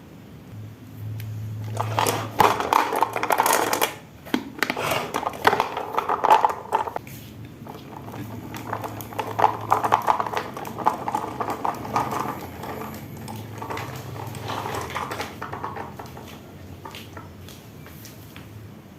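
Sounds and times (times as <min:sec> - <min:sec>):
marbles clattering down wooden track: 0:01.7 - 0:07.0, 0:07.6 - 0:17.3.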